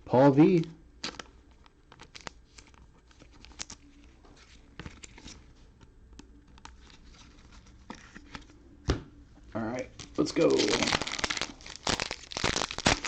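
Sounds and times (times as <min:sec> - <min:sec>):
wrappers rustling: 0:09.9 - 0:13.0.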